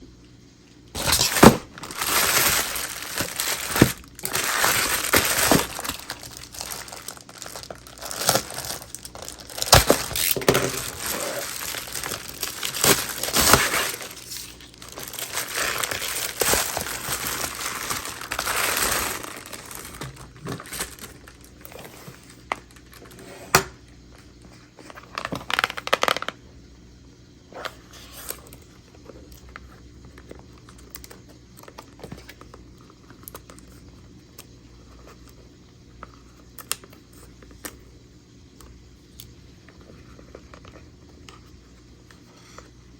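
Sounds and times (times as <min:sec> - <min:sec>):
packaging crinkling and tearing: 0:01.0 - 0:23.2, 0:24.8 - 0:26.4.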